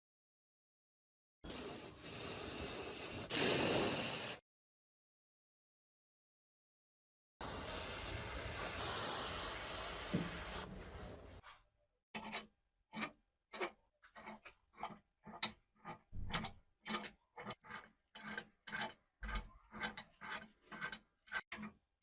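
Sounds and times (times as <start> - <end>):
hand file scraping: 16.9 - 21.8.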